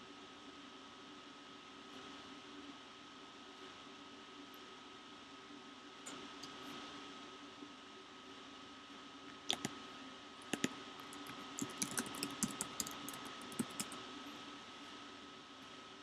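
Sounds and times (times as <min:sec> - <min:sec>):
faint steady hum: 0:00.0 - 0:16.0
typing on computer keyboard: 0:09.5 - 0:09.7, 0:10.4 - 0:14.0.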